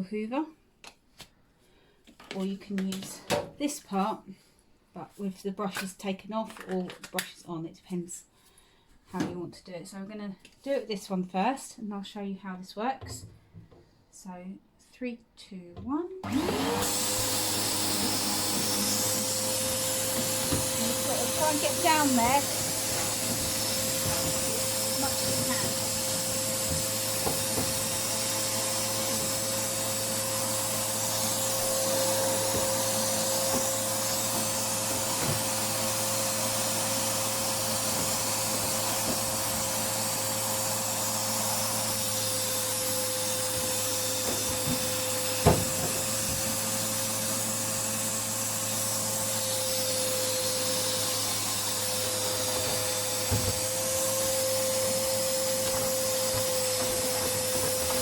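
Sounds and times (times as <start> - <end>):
vacuum cleaner motor whine: 16.2 - 58.0.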